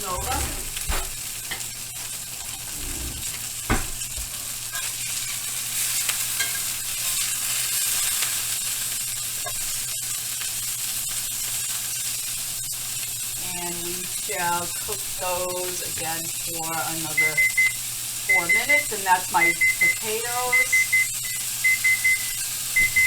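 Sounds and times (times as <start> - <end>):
burger patties sizzling in a pan: 0.0 - 23.0.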